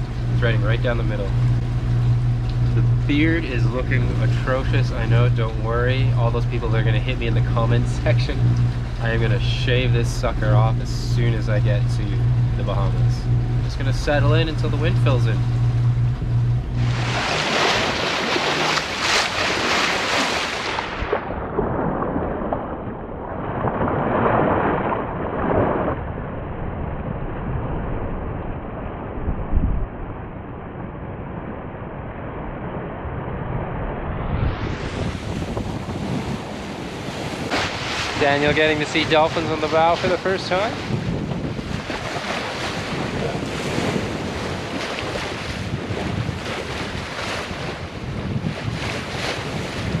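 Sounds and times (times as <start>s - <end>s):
wind buffeting microphone: 0.0s - 20.2s, 21.1s - 50.0s
water rushing along hull: 0.0s - 50.0s.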